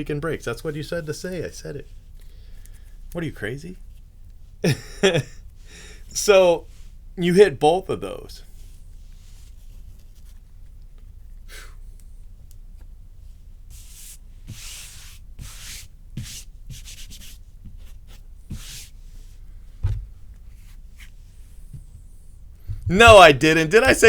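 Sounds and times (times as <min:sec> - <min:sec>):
soft thump: 0:19.8 - 0:20.2, 0:22.6 - 0:23.3.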